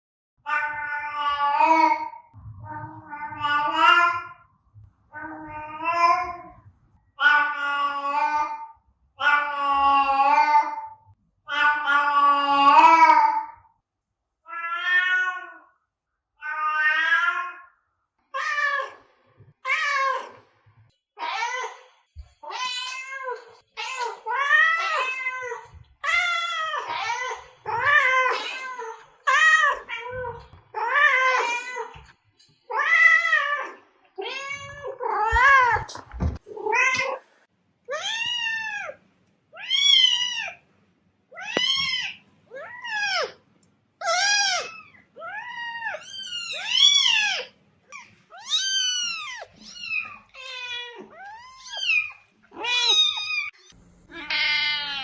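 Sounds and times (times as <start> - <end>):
cat meowing: 0.4 - 4.4, 44.0 - 55.0.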